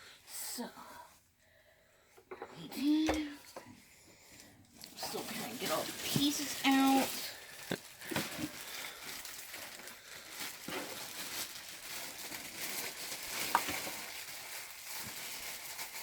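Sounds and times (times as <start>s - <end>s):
plastic bags crinkling: 4.4s - 16.0s.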